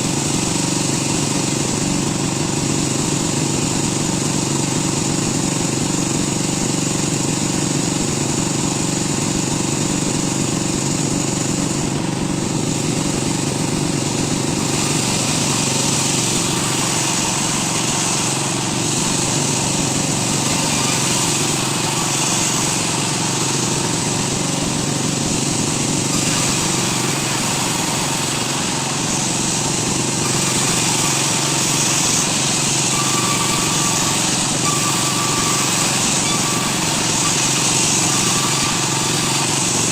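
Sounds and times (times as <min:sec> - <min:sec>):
woodworking power tool motor: 0:00.0 - 0:39.9.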